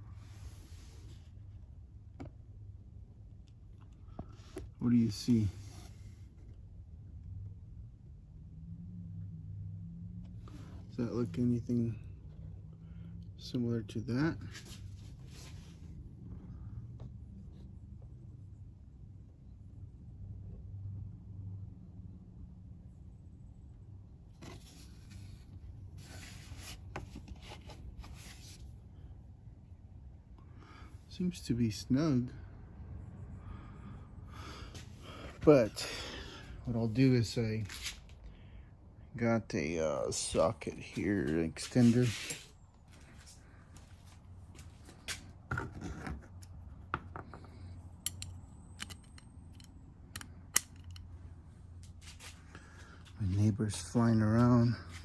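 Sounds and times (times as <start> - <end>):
scraping and rustling: 24.4 - 28.7
screwdriver clicks: 48.0 - 51.0
socket and extension clinking: 48.0 - 51.1.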